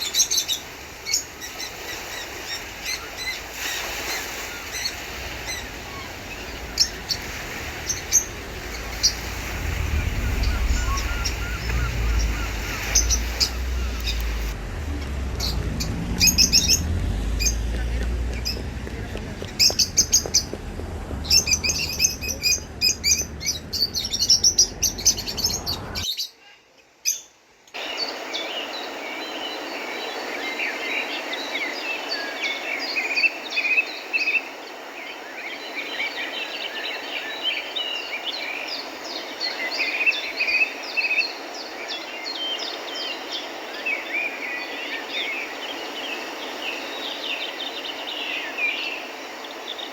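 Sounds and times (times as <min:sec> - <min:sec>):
faint hiss: 0:00.0 - 0:26.0
birds chirping and singing: 0:00.0 - 0:26.2
low rumble: 0:04.4 - 0:26.0.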